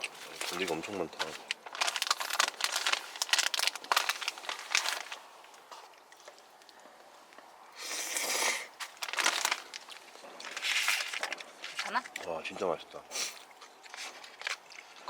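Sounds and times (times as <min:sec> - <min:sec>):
plastic packaging crinkling: 0:00.0 - 0:05.7, 0:08.8 - 0:12.2, 0:13.4 - 0:15.0
plastic tearing rip: 0:01.6 - 0:05.2, 0:08.8 - 0:11.9.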